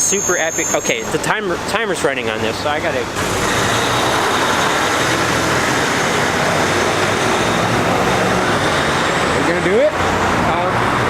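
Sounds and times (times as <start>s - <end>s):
faint high whine: 0.0s - 1.8s
city street traffic: 0.0s - 11.0s.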